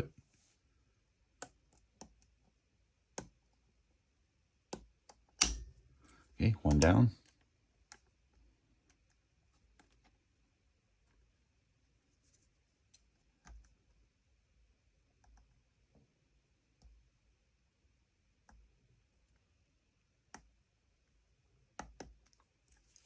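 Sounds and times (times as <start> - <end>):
lock pick clicking in lock: 5.3 - 5.7.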